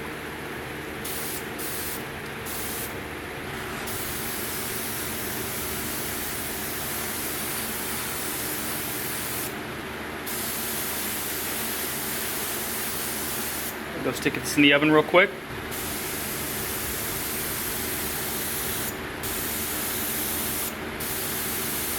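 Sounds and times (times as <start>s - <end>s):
spray gun hissing: 1.0s - 3.0s, 3.9s - 9.5s, 15.7s - 21.9s.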